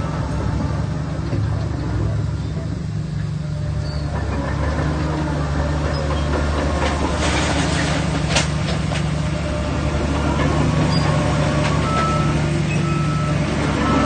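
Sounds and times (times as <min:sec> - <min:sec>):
bulldozer diesel engine running: 0:00.0 - 0:14.0
metallic clanks and squeaks: 0:01.4 - 0:08.9, 0:10.4 - 0:13.2.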